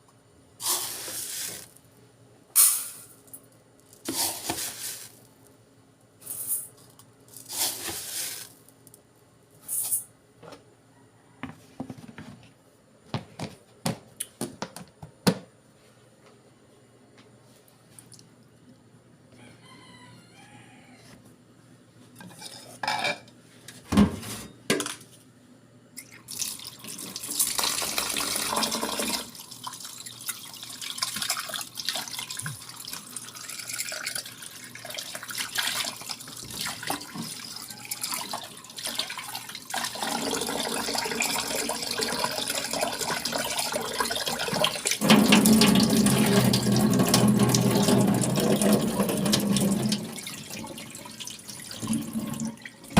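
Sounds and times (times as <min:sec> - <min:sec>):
tap running water into pot: 0:35.5 - 0:37.5, 0:39.8 - 0:52.9.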